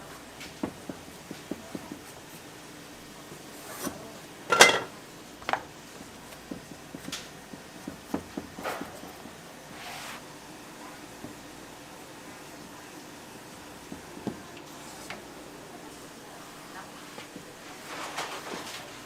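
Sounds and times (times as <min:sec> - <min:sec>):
utensils and dishes knocking: 0:04.5 - 0:04.9.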